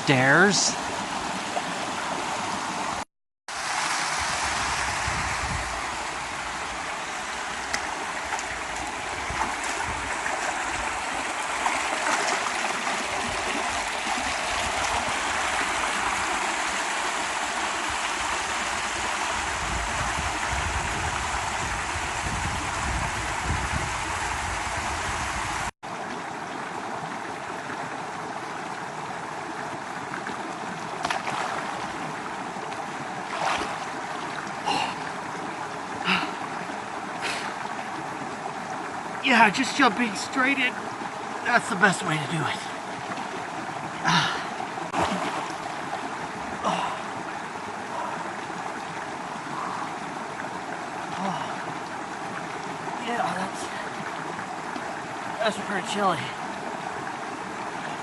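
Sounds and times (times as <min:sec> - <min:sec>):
waterfall rushing: 0:00.0 - 0:25.7, 0:31.1 - 0:58.0.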